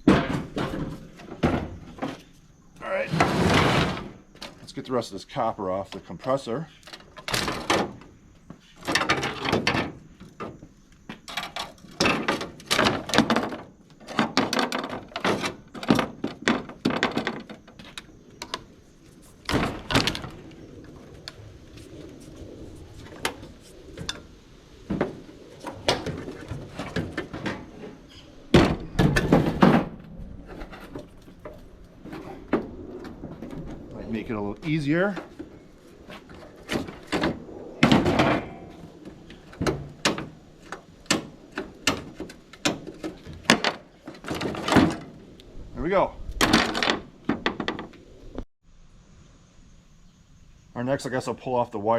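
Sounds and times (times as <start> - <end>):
scraping crunches: 0.0 - 4.8.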